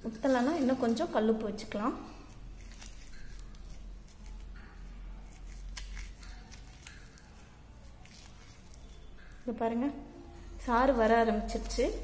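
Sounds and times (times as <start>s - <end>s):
leaves crunching between palms: 2.3s - 4.4s, 5.3s - 9.0s.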